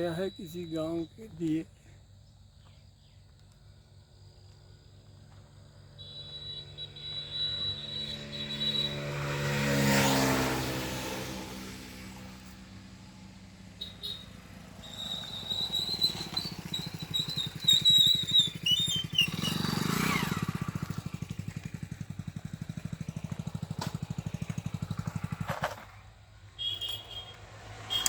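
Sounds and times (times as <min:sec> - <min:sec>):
vehicle engine running: 0:11.0 - 0:26.2.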